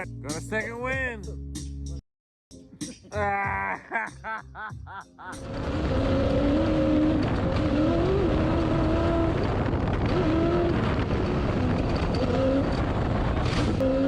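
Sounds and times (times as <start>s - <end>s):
rumble of wind and driving: 5.2s - 14.0s
off-road vehicle engine running: 5.4s - 14.0s.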